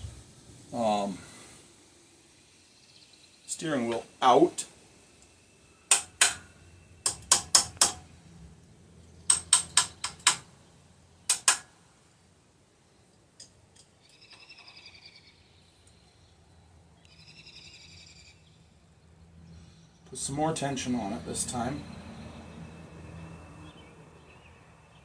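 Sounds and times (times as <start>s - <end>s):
hammer tapping metal: 5.9s - 8.1s, 9.3s - 10.5s, 11.3s - 11.7s.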